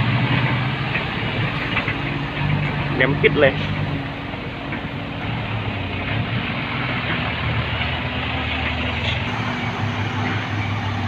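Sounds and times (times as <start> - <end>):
diesel truck engine idling: 0.0 - 11.0.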